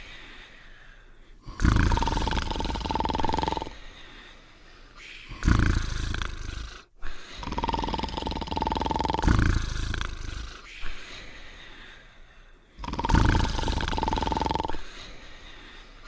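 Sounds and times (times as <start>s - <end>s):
quiet breathing: 0.0s - 16.0s
cartoon dog snoring with whistle: 1.4s - 3.8s, 5.2s - 10.9s, 12.8s - 14.8s.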